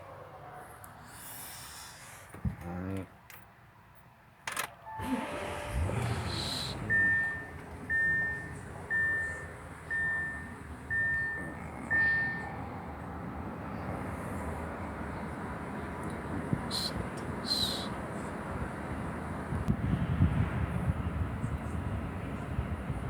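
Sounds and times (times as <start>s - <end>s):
car engine rumbling: 4.5s - 23.0s
dashboard warning chime: 4.8s - 13.2s.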